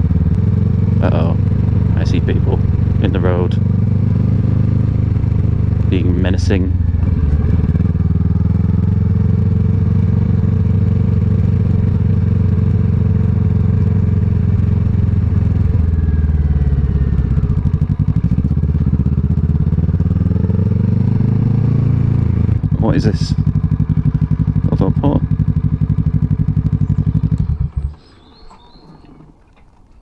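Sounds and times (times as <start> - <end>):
motorcycle engine running: 0.0 - 28.2.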